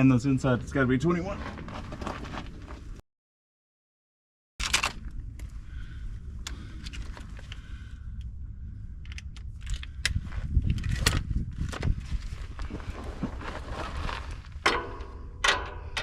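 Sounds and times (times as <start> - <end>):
low rumble: 4.7 - 16.0.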